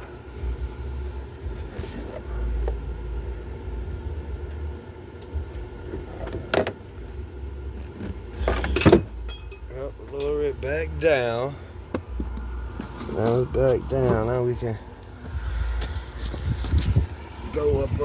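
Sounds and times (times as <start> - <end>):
lifting equipment humming: 6.8 - 18.0
sharp metal clanks: 8.5 - 10.8.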